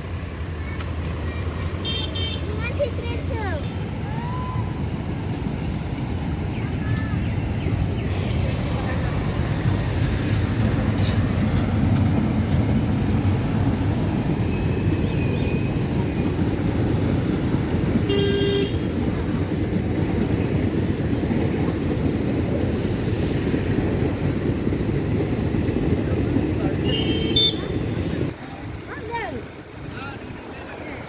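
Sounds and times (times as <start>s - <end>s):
flooded river rushing: 0.0s - 31.0s
vehicle horn toot: 1.8s - 2.6s, 18.1s - 18.9s, 26.8s - 28.3s.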